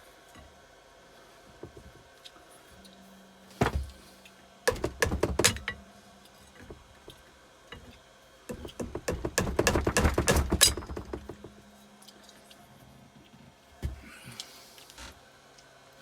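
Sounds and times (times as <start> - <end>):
pry bar knocking on metal: 4.7 - 5.8, 8.5 - 11.5.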